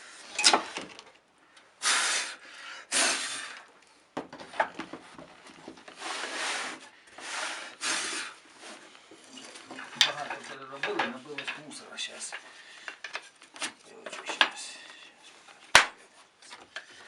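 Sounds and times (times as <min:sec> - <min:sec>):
wood rubbing and scraping: 0:03.6 - 0:17.0.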